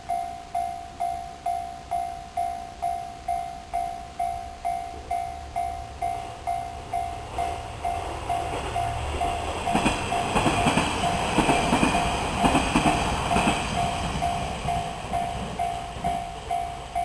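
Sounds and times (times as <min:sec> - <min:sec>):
level crossing warning bell: 0:00.0 - 0:17.0
train wheels clattering over rail joints: 0:06.9 - 0:17.0.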